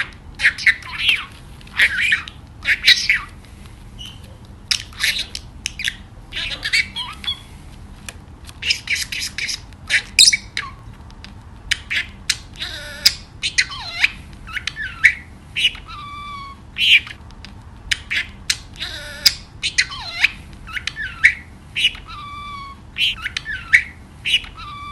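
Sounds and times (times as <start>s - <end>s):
budgerigars chirping and squawking: 0.0s - 7.6s, 8.5s - 10.9s, 11.6s - 24.9s.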